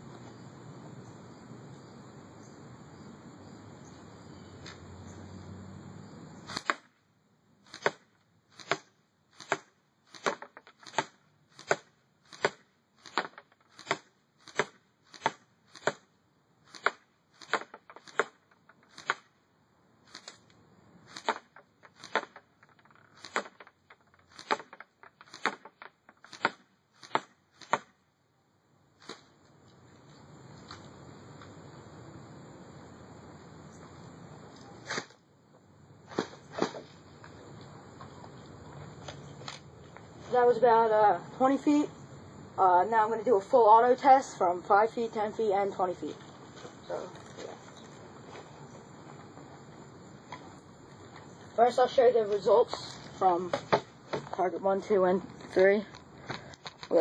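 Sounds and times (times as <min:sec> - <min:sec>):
airsoft gun shots: 0:06.4 - 0:07.0, 0:07.7 - 0:16.1, 0:16.7 - 0:19.3, 0:21.1 - 0:22.4, 0:23.2 - 0:23.7, 0:24.3 - 0:28.0, 0:34.8 - 0:35.2.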